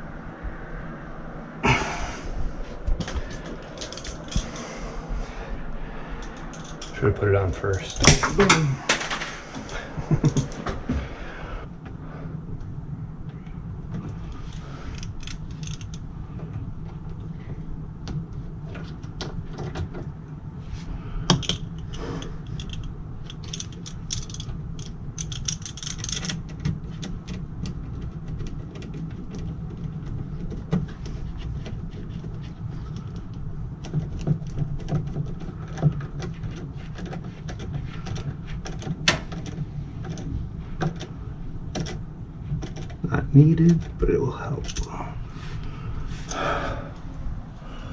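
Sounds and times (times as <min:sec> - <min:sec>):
steady low hum: 0:00.0 - 0:47.9
hand tools clicking and rattling: 0:03.0 - 0:04.8, 0:06.2 - 0:10.8, 0:14.3 - 0:16.1, 0:21.3 - 0:41.1, 0:44.6 - 0:45.0.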